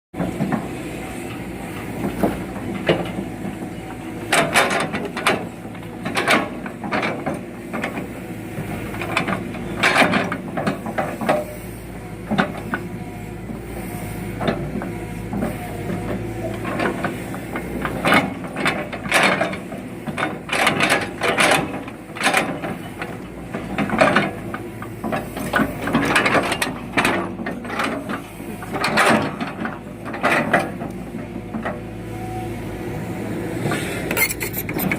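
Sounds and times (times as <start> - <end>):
excavator diesel engine: 0.2 - 34.9
logs clanking and knocking: 16.5 - 31.8.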